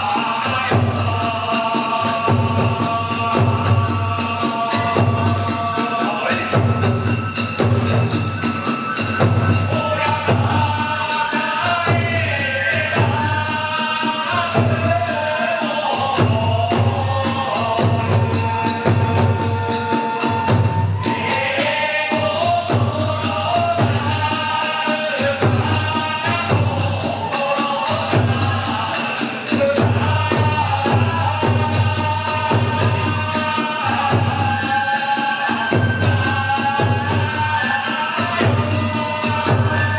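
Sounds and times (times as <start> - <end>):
big drum beating: 0.0 - 11.0, 16.0 - 24.6
metallic hand cymbals: 0.0 - 39.9.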